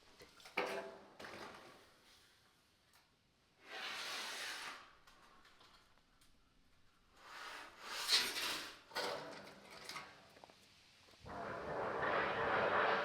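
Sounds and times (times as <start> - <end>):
wooden boards scraping: 11.3 - 13.0.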